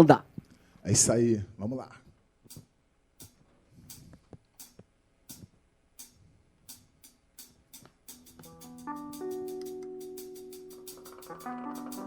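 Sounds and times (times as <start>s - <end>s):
percussion ticks: 2.4s - 12.0s
sustained instrument chords: 8.1s - 12.0s.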